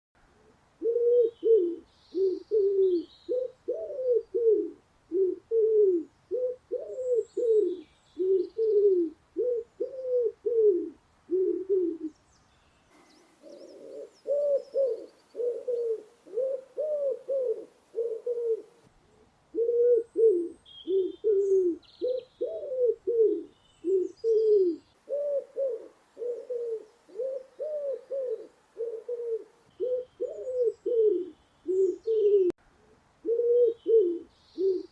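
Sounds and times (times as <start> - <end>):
dove cooing: 0.3 - 12.2, 13.0 - 34.9
small birds chirping: 12.0 - 19.3, 20.1 - 25.6, 26.2 - 32.6, 33.6 - 34.9.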